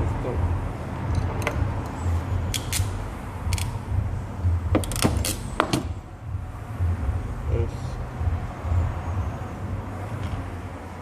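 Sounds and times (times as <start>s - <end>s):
low steady rumble: 0.0s - 11.0s
small hard parts clicking: 1.1s - 3.8s, 4.7s - 5.8s.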